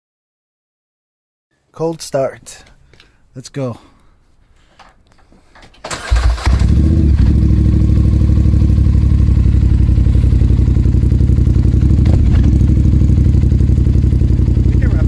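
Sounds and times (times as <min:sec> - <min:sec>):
engine cranking: 0:05.5 - 0:08.0, 0:09.1 - 0:15.0
atv engine idling: 0:05.9 - 0:15.0.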